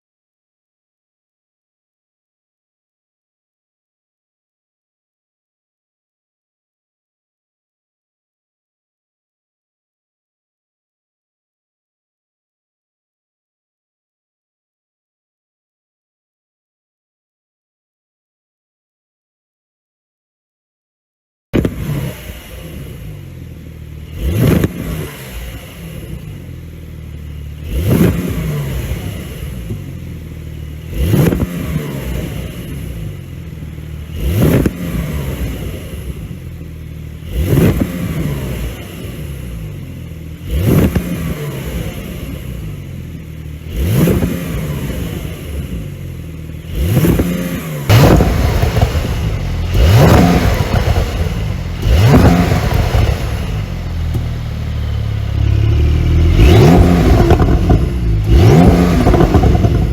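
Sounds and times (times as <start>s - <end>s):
car engine revving with crackle: 21.6s - 59.9s.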